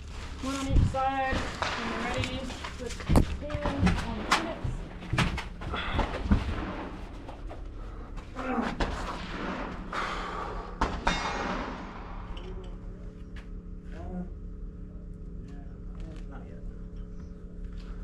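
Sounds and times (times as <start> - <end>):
rustling and handling noise: 0.0 - 9.2
gunshot cracks with echo: 8.8 - 12.4.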